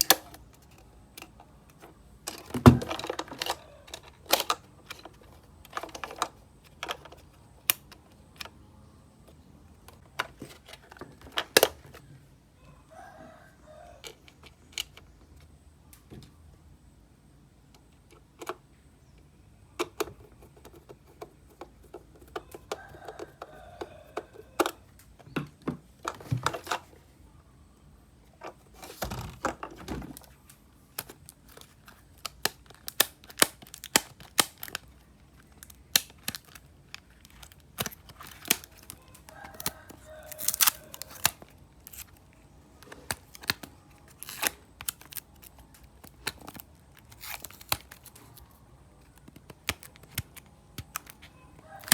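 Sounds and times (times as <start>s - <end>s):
packaging tearing and rustling: 30.9s - 51.9s.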